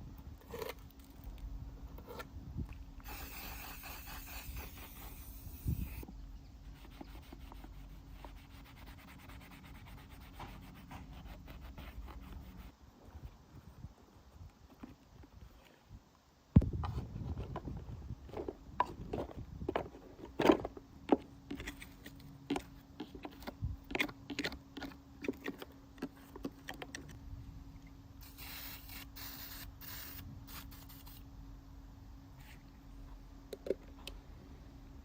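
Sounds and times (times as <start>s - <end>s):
spray can hissing: 3.0s - 6.0s, 28.2s - 31.2s.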